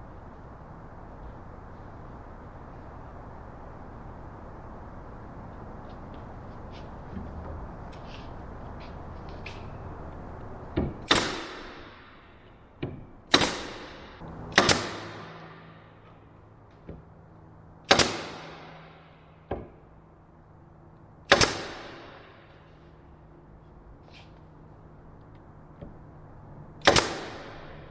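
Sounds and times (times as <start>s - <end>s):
hammer striking nails: 10.8s - 12.1s, 12.8s - 15.6s, 17.9s - 18.8s, 21.3s - 22.2s.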